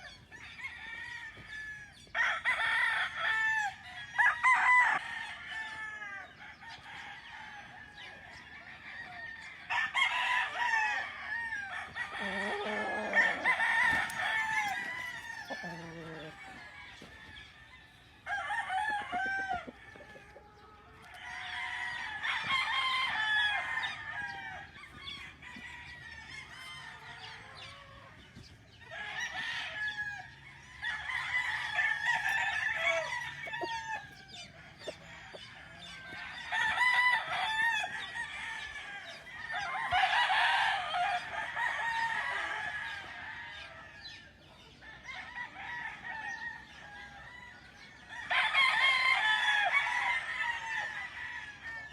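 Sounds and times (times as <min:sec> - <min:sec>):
roosters crowing: 0:00.0 - 0:51.9
hens clucking: 0:05.6 - 0:44.8.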